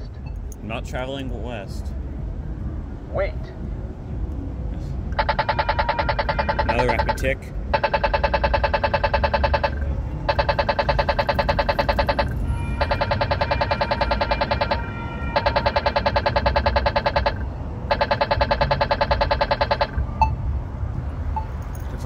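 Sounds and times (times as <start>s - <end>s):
low traffic hum: 0.0s - 22.0s
pedestrian signal rapid ticking: 5.1s - 20.4s.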